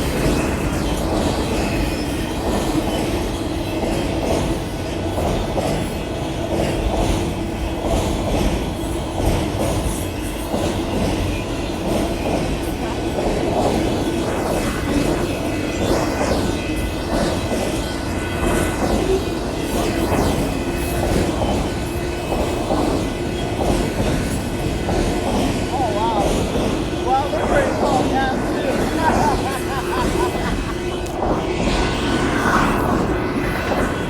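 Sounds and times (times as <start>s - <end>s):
freight train wheels rumbling on rails: 0.0s - 34.0s
train clattering and clicks: 0.0s - 34.0s.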